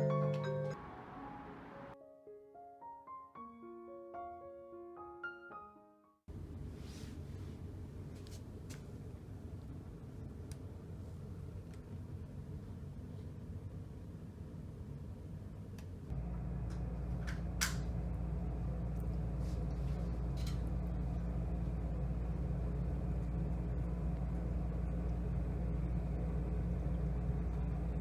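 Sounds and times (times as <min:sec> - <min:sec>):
faint low rumble: 0:06.3 - 0:28.0.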